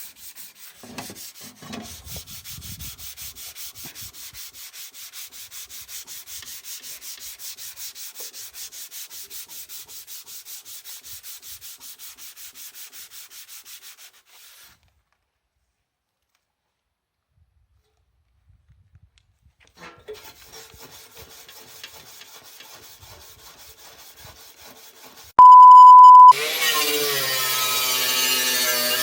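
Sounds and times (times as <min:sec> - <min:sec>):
sanding metal bodywork: 0:00.0 - 0:14.8, 0:19.8 - 0:25.4, 0:26.4 - 0:29.0.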